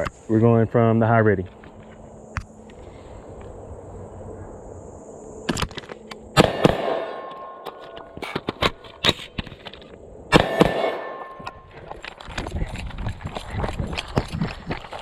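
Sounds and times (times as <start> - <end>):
carbine gunshots: 6.4 - 8.1, 10.3 - 11.6.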